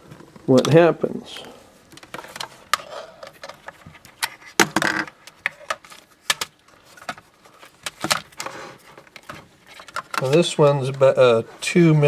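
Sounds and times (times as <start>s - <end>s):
plastic adapters clicking and rattling: 1.9s - 11.0s.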